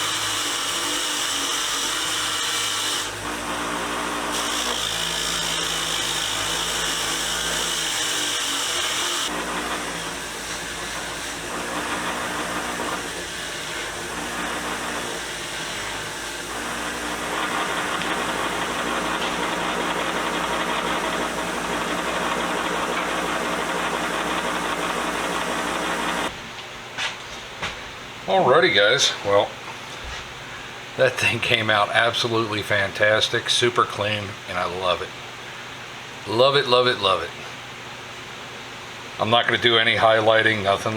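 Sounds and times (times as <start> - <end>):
rotary tool with wire brush: 0.0 - 26.3.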